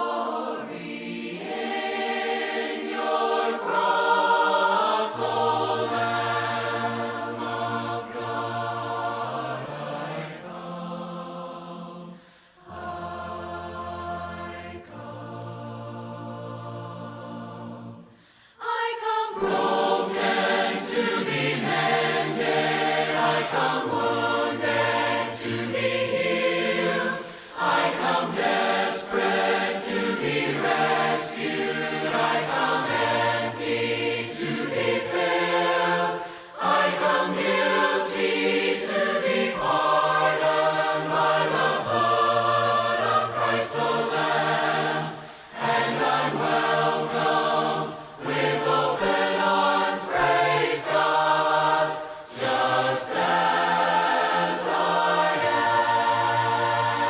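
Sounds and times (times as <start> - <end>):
voices singing a hymn a cappella: 0.0 - 57.0.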